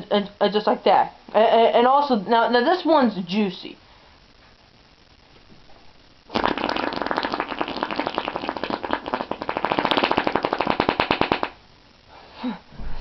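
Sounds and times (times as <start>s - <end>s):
hand-fart noise: 6.3s - 11.6s.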